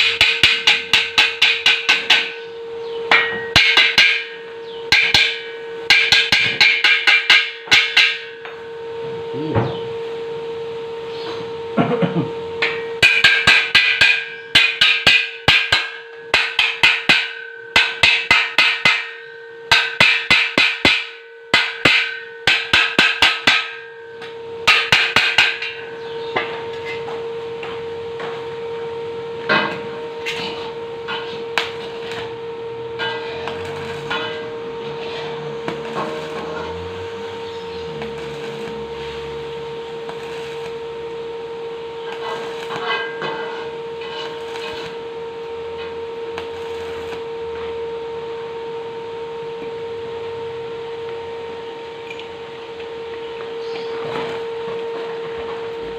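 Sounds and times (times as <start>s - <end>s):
hammer striking metal tube: 0.0s - 8.6s, 12.6s - 28.4s, 29.4s - 32.3s, 32.9s - 36.7s, 42.0s - 44.9s
steady hum: 0.0s - 55.9s.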